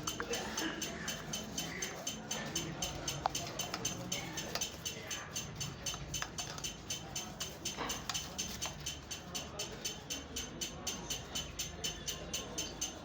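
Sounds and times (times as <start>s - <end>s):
mechanical ticking: 0.0s - 13.0s
sharp clicks: 0.0s - 13.0s.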